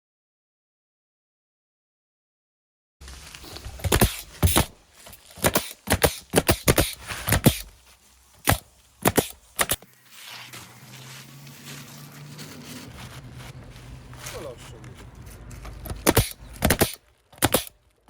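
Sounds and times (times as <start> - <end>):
pneumatic nailer shots: 3.8 - 4.8, 5.4 - 7.8, 8.4 - 9.8, 15.8 - 17.8.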